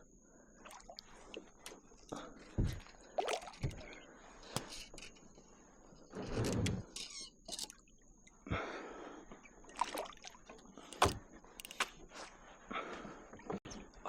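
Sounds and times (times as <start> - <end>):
water splashing and dripping: 0.7 - 1.4, 3.1 - 3.8, 9.7 - 10.4
clicks: 10.9 - 12.0
dull thumps against kayak: 11.0 - 11.2.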